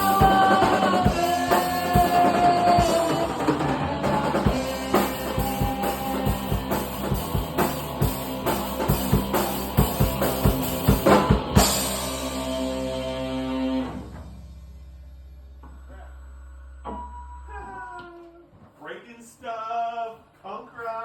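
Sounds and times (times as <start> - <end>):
rock music with drums and guitar: 0.0 - 14.7.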